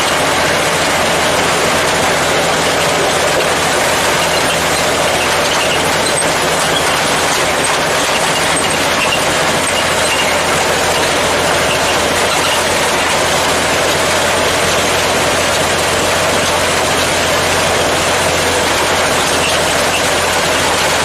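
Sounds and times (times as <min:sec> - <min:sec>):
truck engine running: 0:00.0 - 0:21.0.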